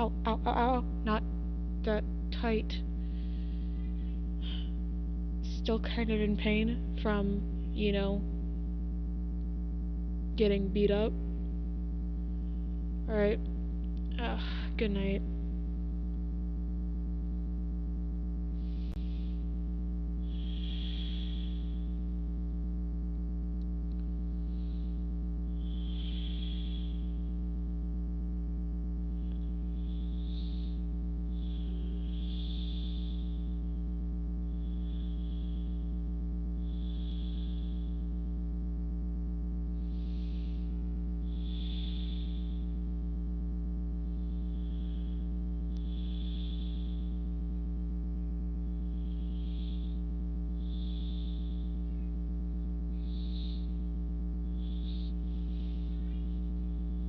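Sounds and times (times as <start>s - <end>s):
low electrical hum: 0.0s - 57.0s
slow soft breathing: 3.0s - 4.8s, 18.5s - 19.6s, 39.7s - 42.9s.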